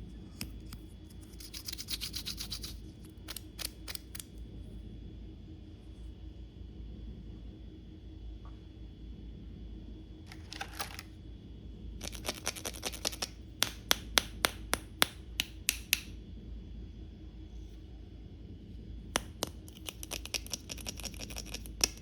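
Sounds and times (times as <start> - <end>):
packaging rustling: 10.3 - 11.0
plastic toy pieces clicking: 10.3 - 11.0.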